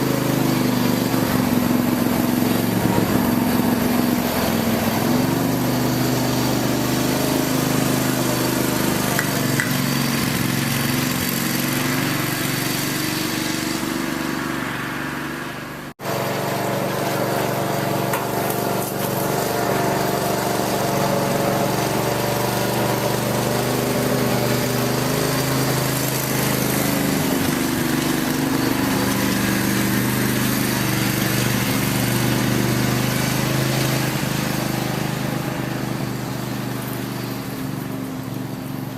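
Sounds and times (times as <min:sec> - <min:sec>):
small engine running steadily: 0:00.0 - 0:38.9.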